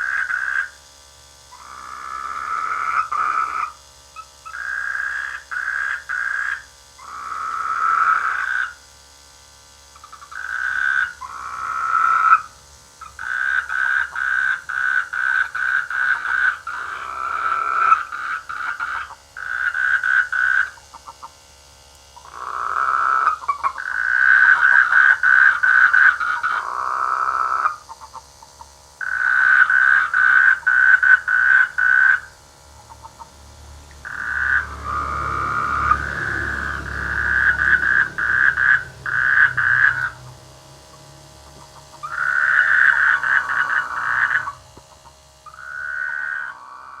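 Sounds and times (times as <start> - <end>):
frogs croaking: 0.0 - 21.5, 22.1 - 47.0
low rumble: 32.9 - 41.9.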